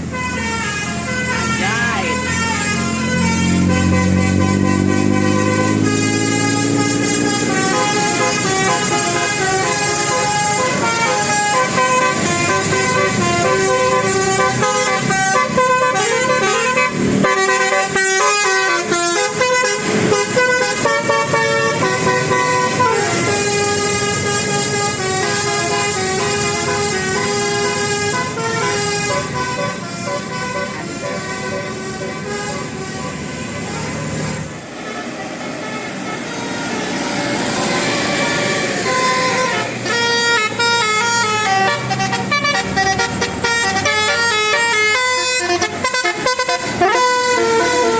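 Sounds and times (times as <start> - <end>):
musical air horn playing tune: 0.0 - 47.9.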